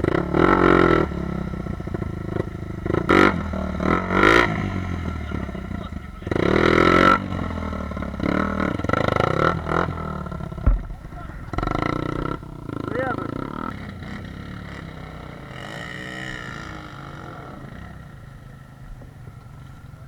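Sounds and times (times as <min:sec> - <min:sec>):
off-road vehicle engine revving: 0:00.0 - 0:20.0
short thump: 0:10.5 - 0:11.8.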